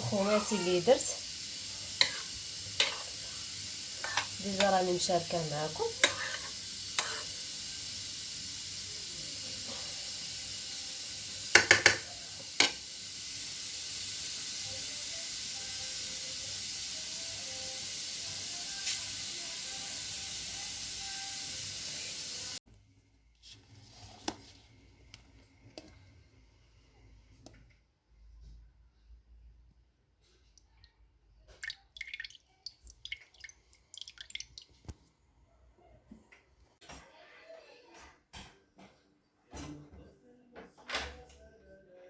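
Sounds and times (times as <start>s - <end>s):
hiss of food cooking in a pot: 0.0s - 22.7s, 23.3s - 27.7s.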